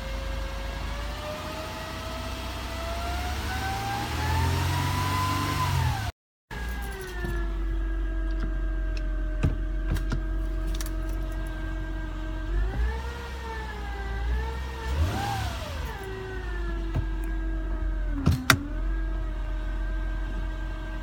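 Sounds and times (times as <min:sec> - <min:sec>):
engine revving: 0:00.0 - 0:06.2, 0:06.8 - 0:21.0
car engine idling: 0:06.5 - 0:21.0.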